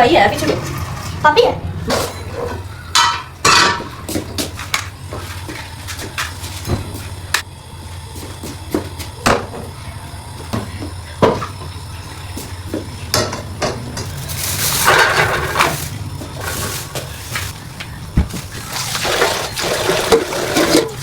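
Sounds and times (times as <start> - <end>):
rushing water from tap: 0.2 - 1.4, 18.2 - 21.0
dishes and utensils knocking: 1.9 - 4.9.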